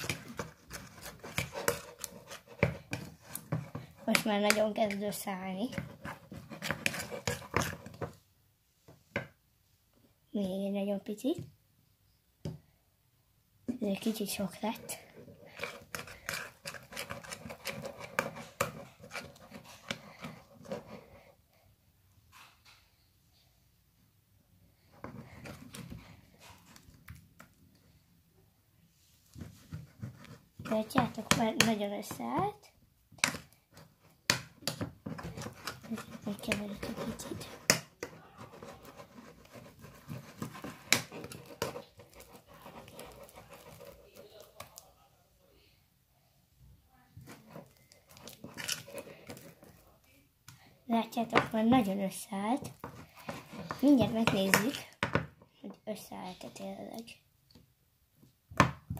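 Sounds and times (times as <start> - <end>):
slime squelching: 0.0 - 8.0, 13.8 - 21.3, 33.2 - 45.0.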